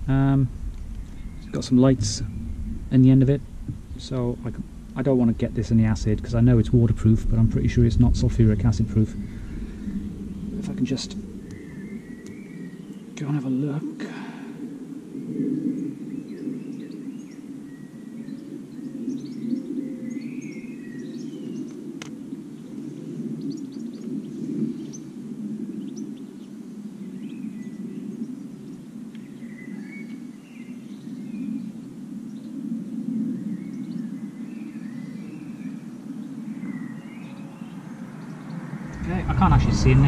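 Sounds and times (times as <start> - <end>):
low rumble: 0.0 - 13.2, 38.5 - 40.0
small birds chirping: 0.0 - 40.0.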